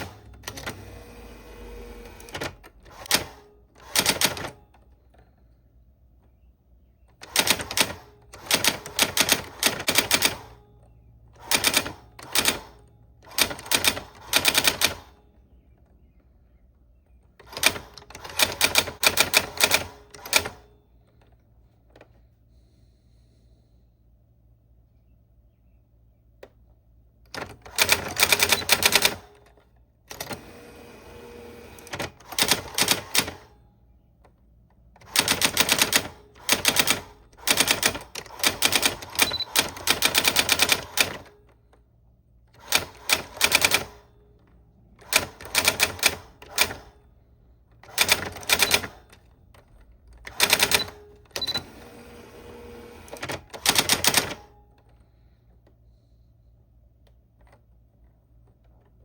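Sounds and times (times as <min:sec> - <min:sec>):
typewriter keys typing: 0:00.0 - 0:00.8, 0:02.0 - 0:04.6, 0:07.2 - 0:10.5, 0:11.4 - 0:12.7, 0:13.3 - 0:15.2, 0:17.4 - 0:20.6, 0:27.3 - 0:29.4, 0:31.8 - 0:33.5, 0:35.0 - 0:41.4, 0:42.6 - 0:44.0, 0:45.0 - 0:47.0, 0:47.8 - 0:51.6, 0:53.1 - 0:54.5.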